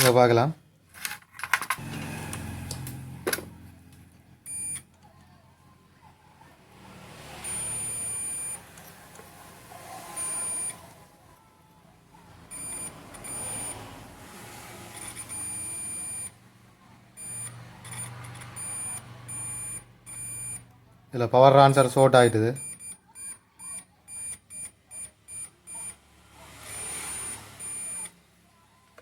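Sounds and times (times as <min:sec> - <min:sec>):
multimeter continuity beeps: 0:04.5 - 0:04.9, 0:07.4 - 0:08.7, 0:10.2 - 0:10.8, 0:12.5 - 0:13.9, 0:15.0 - 0:16.4, 0:17.2 - 0:20.7, 0:22.2 - 0:26.0, 0:26.7 - 0:28.2.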